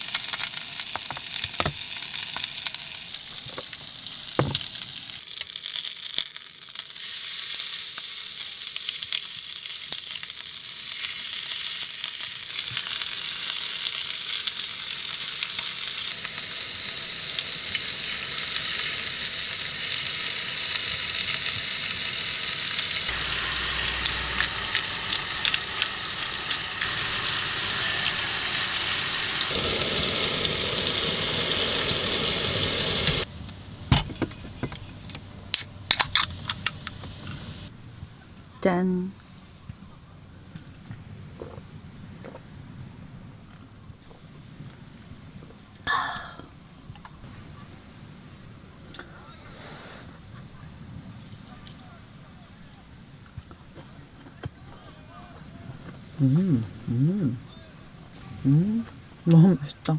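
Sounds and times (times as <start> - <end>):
meat sizzling: 0.0 - 33.3.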